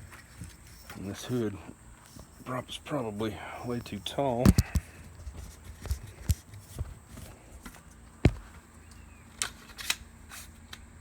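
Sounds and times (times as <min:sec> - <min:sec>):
hood prop clicking and knocking: 0:03.8 - 0:10.0.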